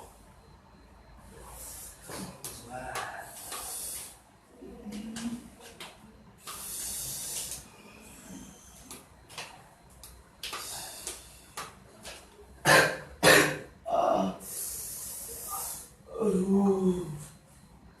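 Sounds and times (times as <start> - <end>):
breathy hissing exhalations: 3.2 - 4.2, 6.4 - 8.8, 10.5 - 11.6, 14.4 - 16.1
person coughing hard: 12.6 - 13.7.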